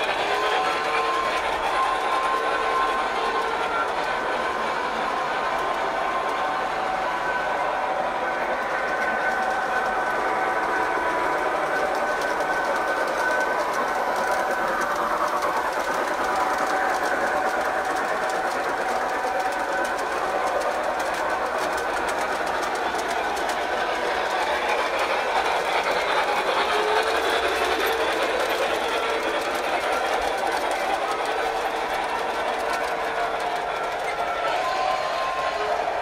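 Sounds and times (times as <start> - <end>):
model train motor whirring: 0.0 - 35.9.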